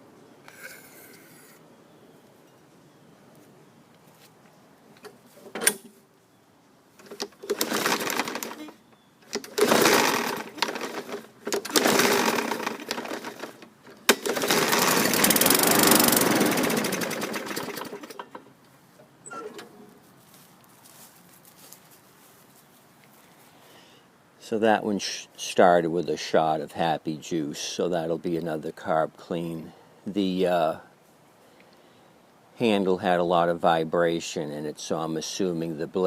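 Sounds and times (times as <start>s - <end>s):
lawn mower engine running: 7.0s - 18.6s
lawn mower engine starting: 7.0s - 18.6s, 19.2s - 20.0s.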